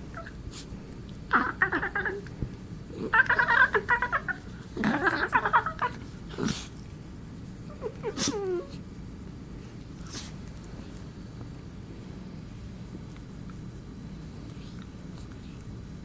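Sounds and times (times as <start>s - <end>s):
puppy making high-pitched vocalisations: 1.3s - 2.3s, 3.1s - 6.0s.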